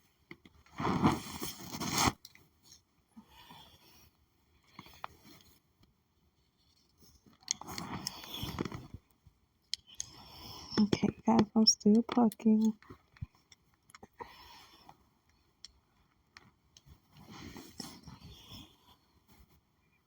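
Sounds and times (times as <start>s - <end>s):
wig hair scraping and rustling: 0.7s - 2.2s
faint small scratches: 6.4s - 9.1s.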